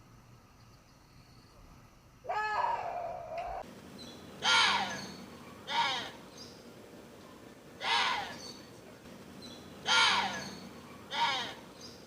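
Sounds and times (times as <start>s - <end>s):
deer screaming calls: 4.4s - 6.2s, 7.8s - 8.4s, 9.8s - 11.7s.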